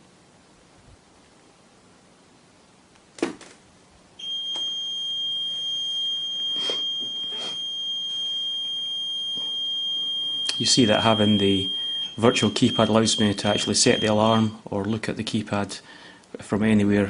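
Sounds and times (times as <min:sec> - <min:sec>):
high-pitched alarm tone: 0:04.2 - 0:14.4.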